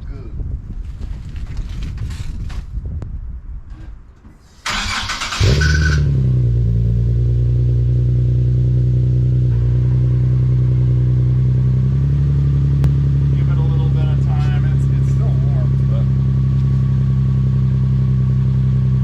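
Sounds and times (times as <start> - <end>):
car engine loud idle: 5.4 - 19.0.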